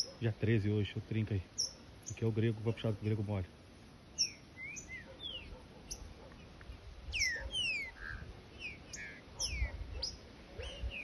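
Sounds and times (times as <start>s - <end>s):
bird whistling song: 4.2s - 6.1s, 7.1s - 11.0s.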